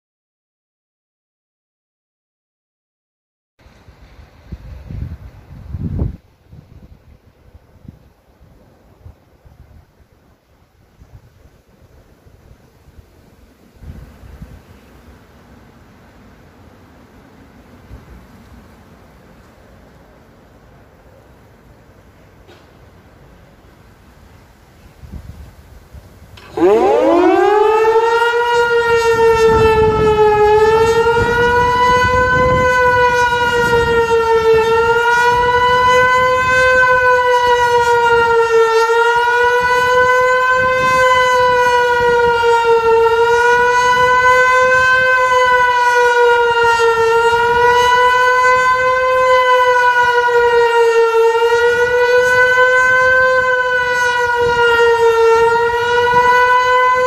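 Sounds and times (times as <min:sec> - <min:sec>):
motor siren howling: 0:26.4 - 0:57.0.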